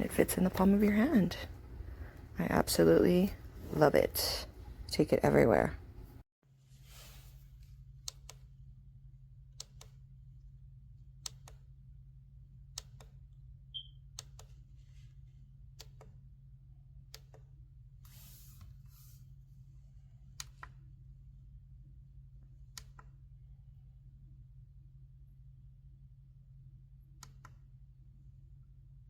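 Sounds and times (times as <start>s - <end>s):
faint low hum: 7.1s - 29.0s.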